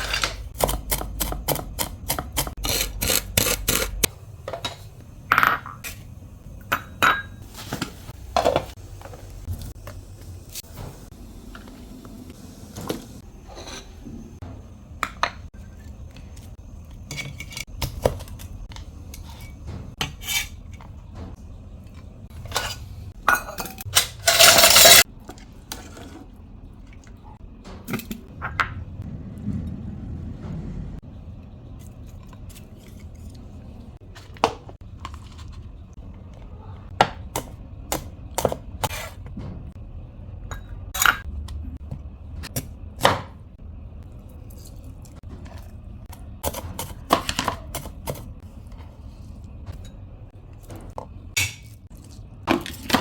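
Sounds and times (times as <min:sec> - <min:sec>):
dishes and utensils clinking: 0:06.6 - 0:08.8, 0:22.4 - 0:25.1
dishes clattering: 0:06.6 - 0:08.8, 0:22.4 - 0:25.1.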